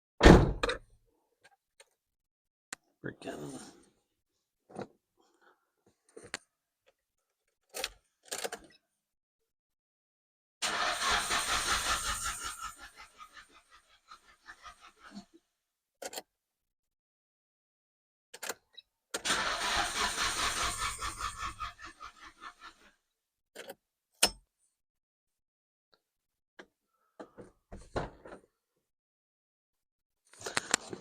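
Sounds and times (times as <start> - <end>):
car engine cranking: 10.6 - 13.5, 19.2 - 22.4.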